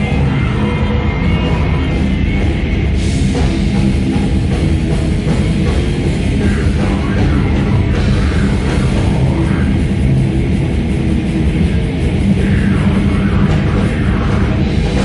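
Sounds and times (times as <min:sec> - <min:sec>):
heavy metal band playing live: 0:00.0 - 0:15.0.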